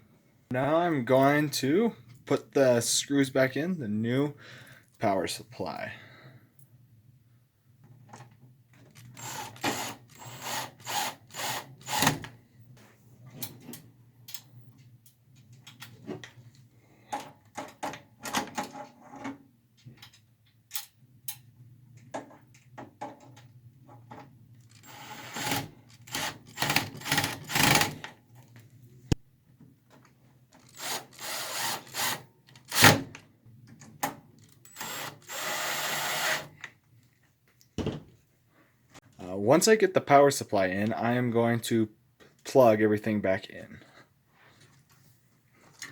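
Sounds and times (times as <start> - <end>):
power drill driving screws: 9.1 - 12.3, 24.7 - 28.0, 30.7 - 33.0, 34.7 - 36.5.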